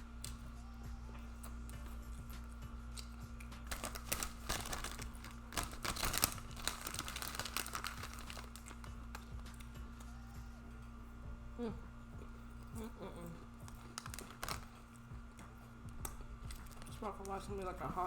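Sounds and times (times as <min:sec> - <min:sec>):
faint steady hum: 0:00.0 - 0:18.0
food packaging crinkling: 0:03.6 - 0:09.7, 0:13.6 - 0:15.1, 0:16.0 - 0:17.7.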